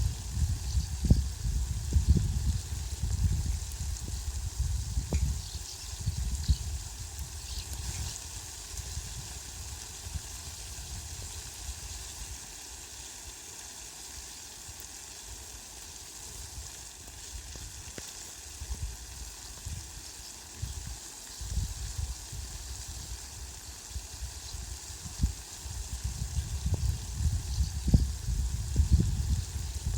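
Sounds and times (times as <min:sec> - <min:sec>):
heavy rain on plants: 0:00.0 - 0:29.9.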